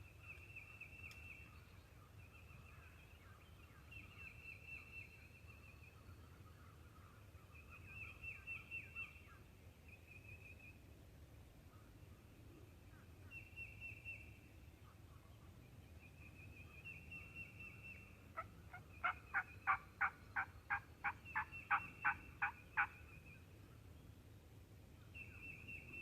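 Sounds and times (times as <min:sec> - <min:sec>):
turkey yelps: 0:18.4 - 0:22.9.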